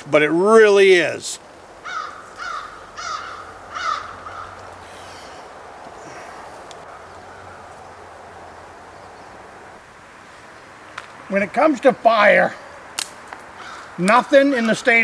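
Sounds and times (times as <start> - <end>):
faint outdoor background: 0.0 - 15.0
crow cawing: 1.8 - 7.6, 13.6 - 14.0.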